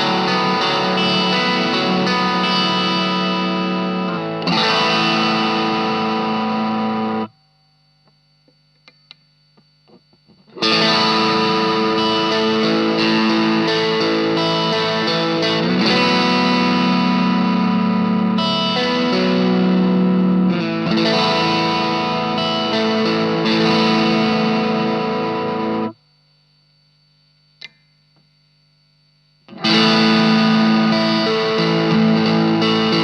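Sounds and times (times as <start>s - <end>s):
overdriven electric guitar chords: 0.0s - 8.1s, 9.9s - 26.0s, 29.5s - 33.0s
faint amp hum: 0.0s - 33.0s
click: 8.0s - 10.2s, 27.6s - 28.3s.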